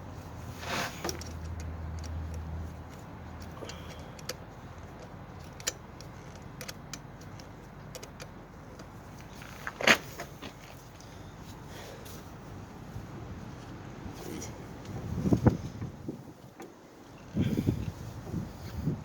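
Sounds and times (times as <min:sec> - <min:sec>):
metallic clicks of hand tools: 0:01.0 - 0:08.9.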